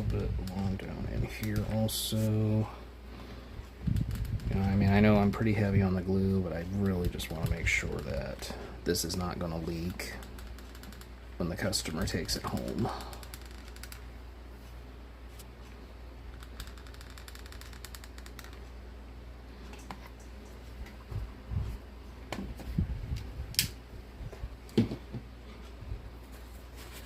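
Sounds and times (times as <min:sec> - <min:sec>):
light clicks and small knocks: 0:00.0 - 0:02.1, 0:03.6 - 0:05.7, 0:06.6 - 0:14.1, 0:15.4 - 0:18.8
low steady hum: 0:00.0 - 0:27.0.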